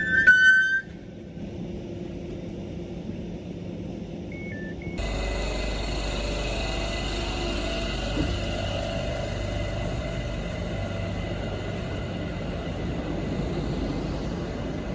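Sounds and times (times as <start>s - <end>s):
electric train hum and whine: 0.0s - 14.9s
train rumbling: 0.0s - 14.9s.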